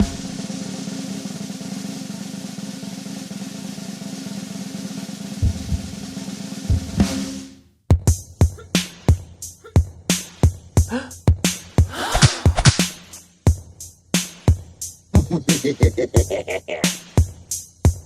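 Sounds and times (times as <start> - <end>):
punchy drum beat: 0.0 - 0.8, 11.9 - 13.2
snare drum roll: 12.0 - 13.0.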